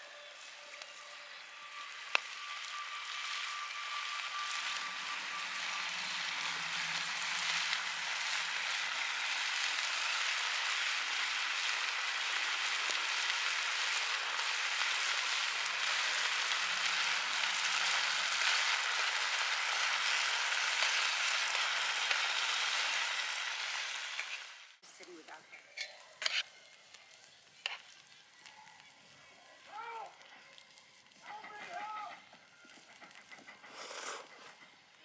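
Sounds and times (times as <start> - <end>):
food sizzling in a hot pan: 0.0 - 31.0.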